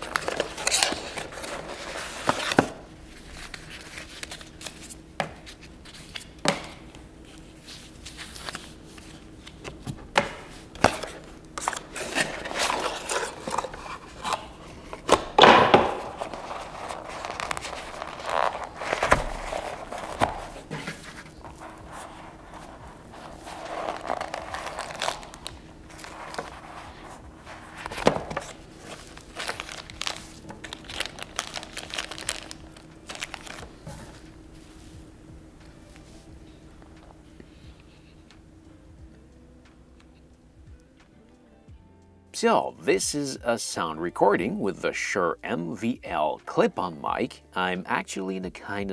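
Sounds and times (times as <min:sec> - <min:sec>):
packaging crinkling: 0:00.0 - 0:05.0, 0:10.8 - 0:34.4.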